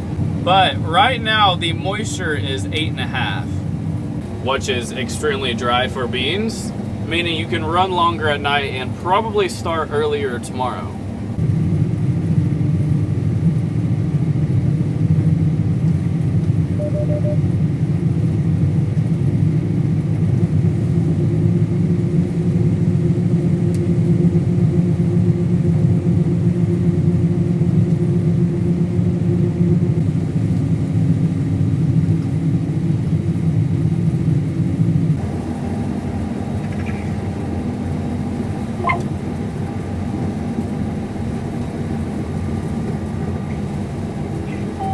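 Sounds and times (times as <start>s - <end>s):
combine harvester drone: 0.0s - 44.9s
short high tone: 16.8s - 17.4s.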